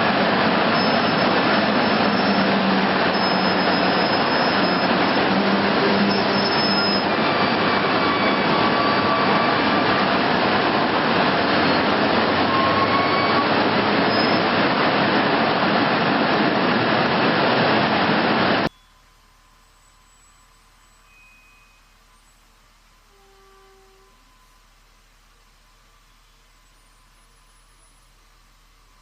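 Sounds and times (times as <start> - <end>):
faint whistling tones: 18.7 - 24.7.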